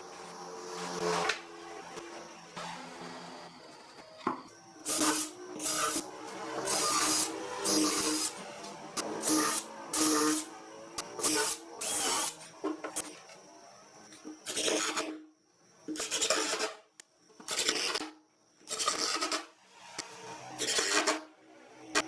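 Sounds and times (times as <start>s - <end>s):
woodworking tool hissing strokes: 4.9s - 10.5s.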